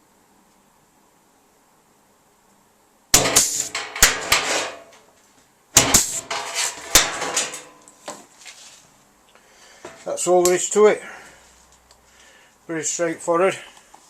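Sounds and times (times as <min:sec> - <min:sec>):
pneumatic air punch clack: 0:03.2 - 0:04.9, 0:05.8 - 0:07.6
sheet metal clattering: 0:03.2 - 0:05.1, 0:05.8 - 0:07.8.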